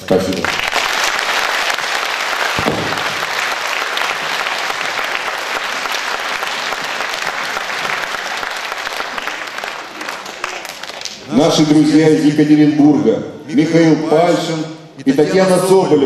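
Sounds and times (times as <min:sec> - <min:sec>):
audience applauding: 0:00.1 - 0:11.7.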